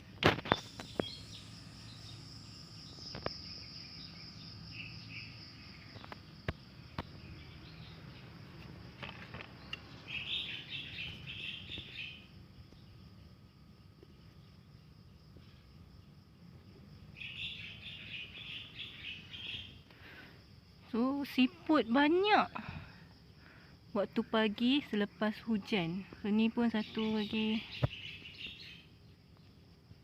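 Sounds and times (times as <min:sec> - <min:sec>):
insect drone: 0:00.0 - 0:30.0
birds chirping: 0:00.4 - 0:06.2, 0:09.4 - 0:13.0, 0:17.1 - 0:19.8, 0:26.2 - 0:29.6.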